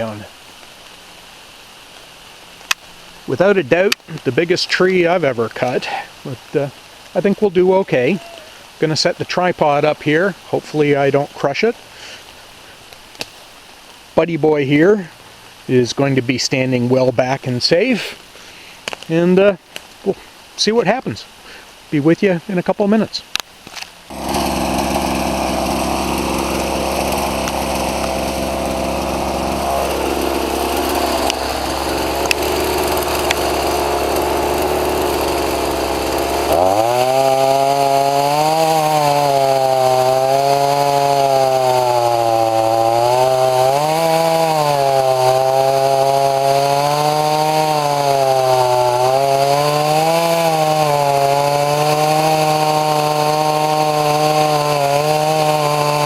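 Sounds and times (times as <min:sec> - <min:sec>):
chainsaw cutting wood: 0:23.7 - 0:56.0.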